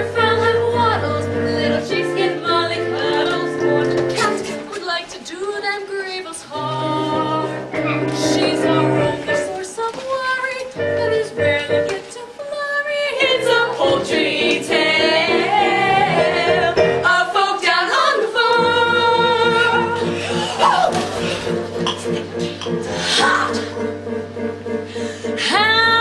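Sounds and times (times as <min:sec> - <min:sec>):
cast singing together: 0:10.9 - 0:20.7
instrumental accompaniment: 0:18.4 - 0:26.0.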